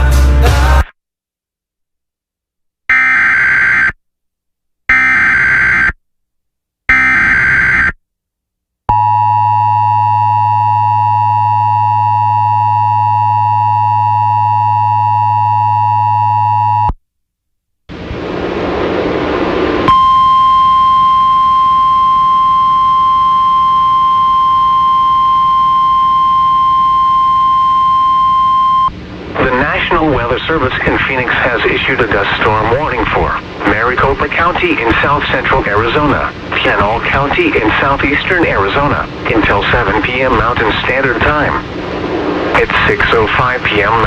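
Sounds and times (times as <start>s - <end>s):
steady warning tone: 2.9s - 4.0s, 4.9s - 6.0s, 6.9s - 8.0s, 17.9s - 44.0s
static hiss: 17.9s - 20.0s, 28.9s - 44.0s.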